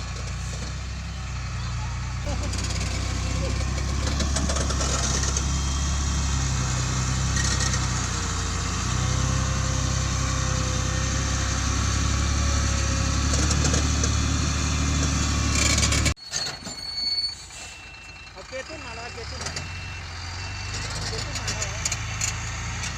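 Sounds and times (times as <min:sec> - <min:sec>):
engine running: 0:00.0 - 0:16.2.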